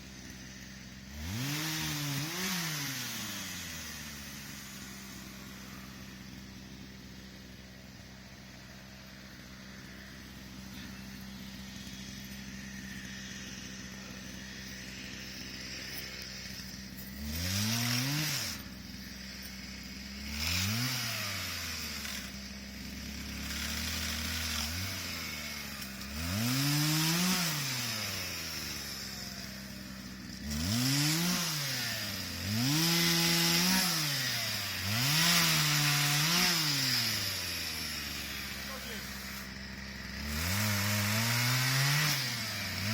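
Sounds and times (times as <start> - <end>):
chainsaw idling and revving: 0.0 - 42.9.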